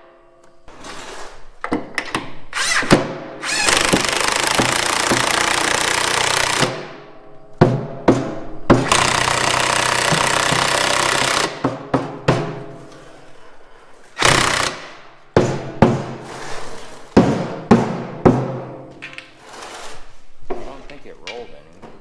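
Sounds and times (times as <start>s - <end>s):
air tool running: 2.6s - 6.8s, 8.8s - 11.6s, 14.2s - 15.0s.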